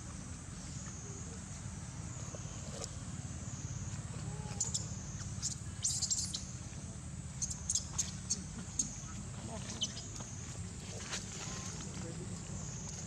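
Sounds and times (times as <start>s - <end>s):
steady high hum: 0.0s - 13.0s
high-pitched animal chirps: 4.5s - 6.5s.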